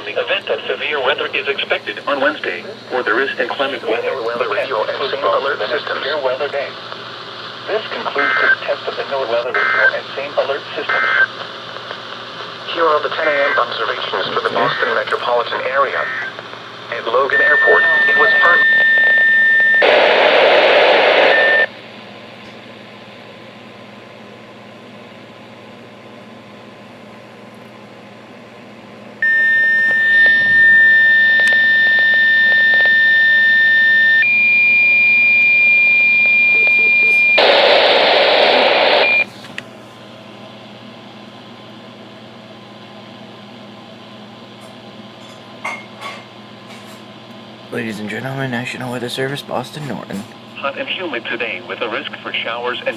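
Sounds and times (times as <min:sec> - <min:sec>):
steady electronic tones: 0:17.3 - 0:21.7, 0:29.2 - 0:39.3.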